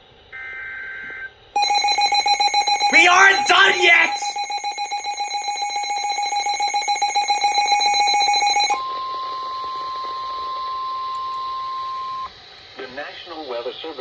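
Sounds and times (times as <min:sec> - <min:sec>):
steady warning alarm tone: 0:01.6 - 0:08.8
pulsing electronic alarm beep: 0:01.6 - 0:09.1.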